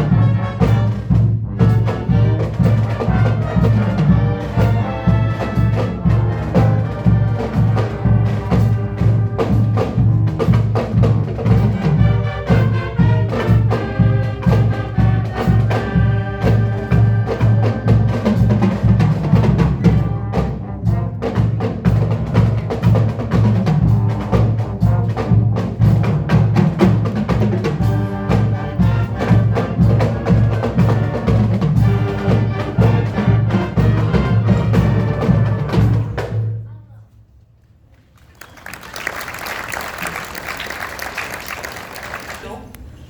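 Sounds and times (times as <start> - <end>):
brass instruments melody: 0.0 - 36.6
percussion beat: 0.0 - 36.6.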